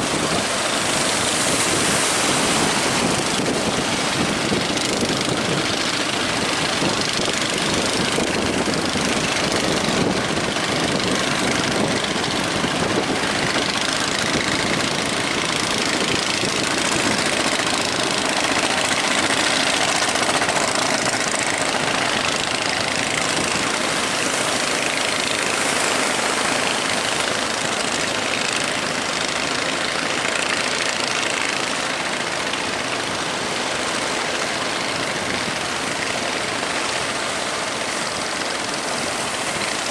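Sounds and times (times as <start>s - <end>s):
loud rushing noise: 0.0s - 29.9s
ship engine running: 0.0s - 39.9s.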